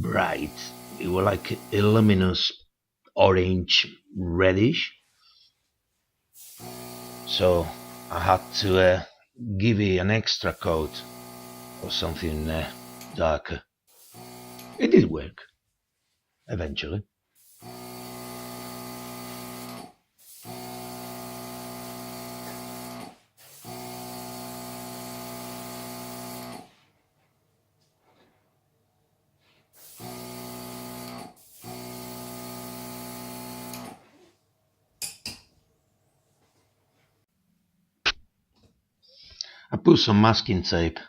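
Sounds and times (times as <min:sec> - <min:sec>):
paint sprayer motor buzzing: 0:00.1 - 0:02.2, 0:06.4 - 0:08.8, 0:10.4 - 0:13.2, 0:13.9 - 0:14.8, 0:17.4 - 0:26.7, 0:29.8 - 0:34.0
hiss of spraying paint: 0:00.3 - 0:02.2, 0:06.4 - 0:08.8, 0:10.5 - 0:13.2, 0:13.9 - 0:14.7, 0:17.4 - 0:18.2, 0:19.2 - 0:24.4, 0:29.8 - 0:31.9.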